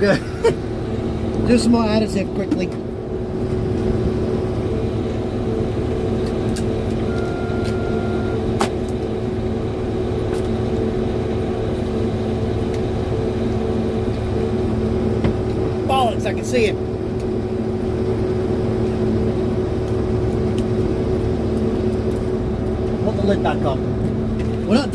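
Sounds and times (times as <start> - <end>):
vehicle engine droning: 0.0 - 24.9
short high beep: 7.1 - 8.4.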